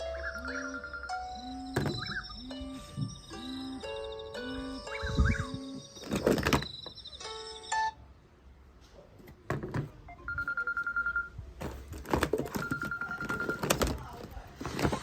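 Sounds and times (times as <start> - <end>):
trilled phone ringtone: 0.0 - 8.0, 10.1 - 11.5, 12.5 - 13.9.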